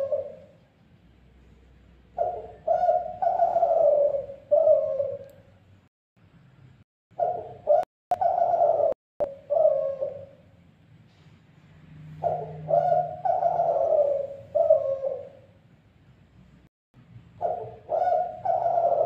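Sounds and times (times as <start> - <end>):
dove cooing: 0.0 - 0.6, 2.1 - 5.5, 7.2 - 10.5, 12.2 - 15.6, 17.4 - 19.0.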